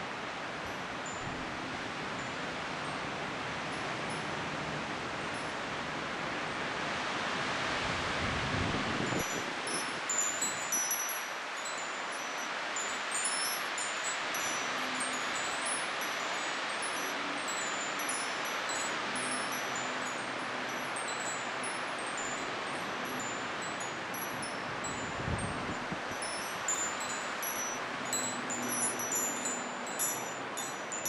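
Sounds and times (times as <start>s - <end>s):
wind chimes tinkling: 0.6s - 3.1s, 9.1s - 31.0s
strong wind rushing: 7.6s - 9.7s.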